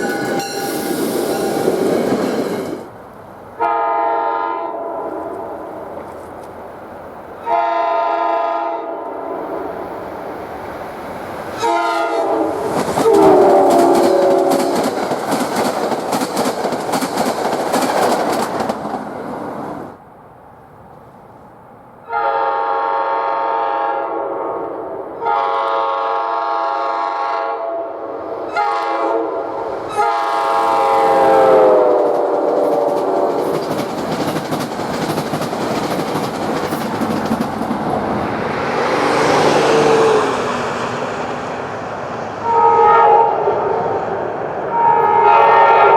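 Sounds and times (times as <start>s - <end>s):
train air horn blasts: 0.0s - 1.7s, 3.6s - 5.7s, 7.4s - 9.7s, 11.6s - 14.9s, 22.0s - 33.5s, 42.4s - 44.0s, 44.7s - 45.9s
train wheels clattering over rail joints: 12.6s - 19.7s, 31.4s - 38.2s.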